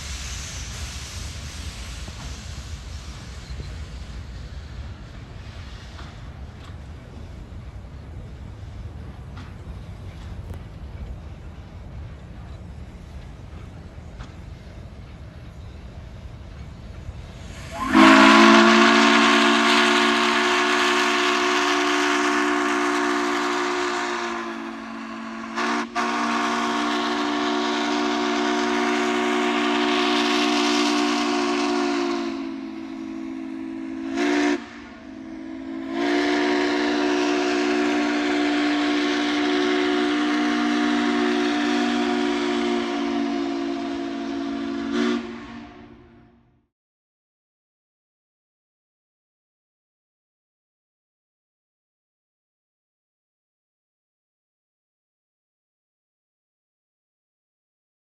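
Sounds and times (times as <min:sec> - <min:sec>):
steam locomotive whistle: 0:17.4 - 0:46.4.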